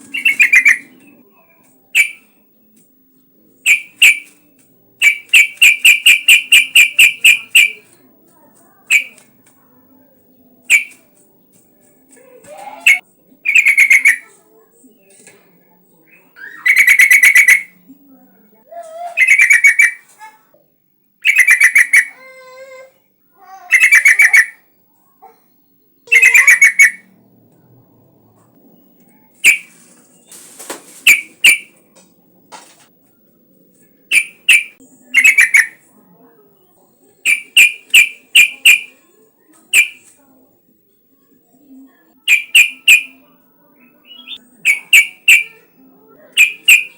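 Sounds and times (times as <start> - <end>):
bird calling bubbling phrases: 0.0 - 1.2, 1.9 - 2.3, 3.6 - 4.3, 5.0 - 7.8, 8.9 - 9.2, 10.7 - 11.0, 12.5 - 14.3, 16.3 - 17.8, 18.8 - 20.1, 21.2 - 22.6, 23.7 - 24.6, 26.1 - 27.1, 34.1 - 35.8, 37.2 - 38.9, 42.3 - 43.2, 44.0 - 45.7, 46.3 - 46.9.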